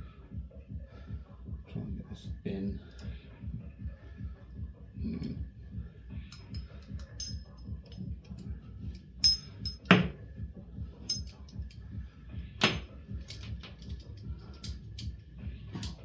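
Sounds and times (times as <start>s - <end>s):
handcuffs and key clinking: 6.3s - 10.2s, 11.0s - 11.9s, 12.6s - 16.0s.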